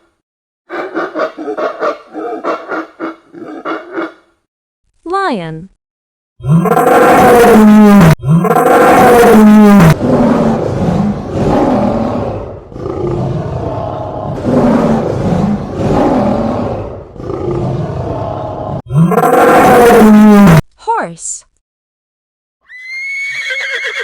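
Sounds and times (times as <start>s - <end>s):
lion roaring: 6.4s - 20.6s.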